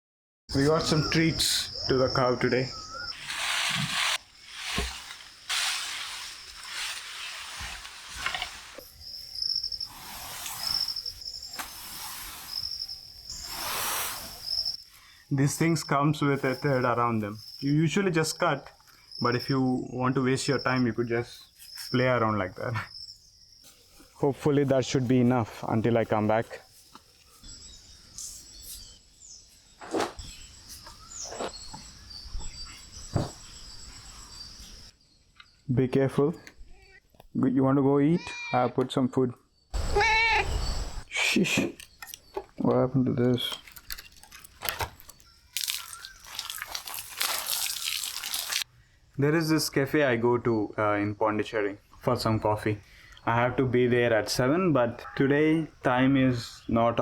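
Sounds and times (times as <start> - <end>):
high falling bird chirps: 0.5 - 7.6, 8.6 - 35.8, 39.6 - 49.8
insect trilling: 0.6 - 3.3, 8.8 - 11.6, 12.2 - 21.1, 39.8 - 42.3, 45.0 - 48.7
rustling and handling noise: 3.1 - 14.4, 43.2 - 48.6.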